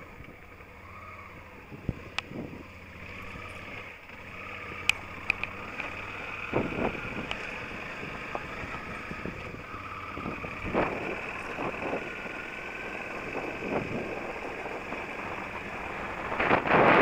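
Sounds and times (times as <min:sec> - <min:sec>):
motorcycle running over rough ground: 0:00.0 - 0:17.0
wind rushing on microphone: 0:01.6 - 0:02.7, 0:06.4 - 0:17.0.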